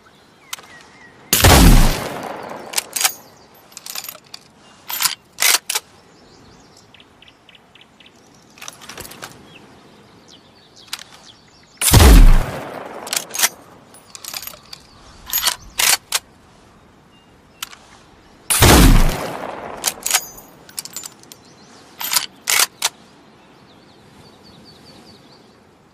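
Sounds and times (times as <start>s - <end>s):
metallic rifle bolt clicks: 0.5s - 5.9s, 10.8s - 16.2s, 18.5s - 21.4s, 22.0s - 23.0s
rifle shots: 1.4s - 3.2s, 11.8s - 13.7s, 18.5s - 20.4s.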